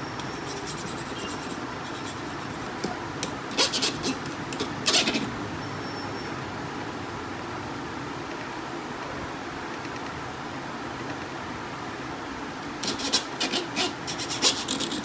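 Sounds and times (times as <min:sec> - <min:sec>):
steady background hum: 0:00.0 - 0:15.0
printer parts scraping and clicking: 0:00.2 - 0:05.3, 0:12.8 - 0:15.0.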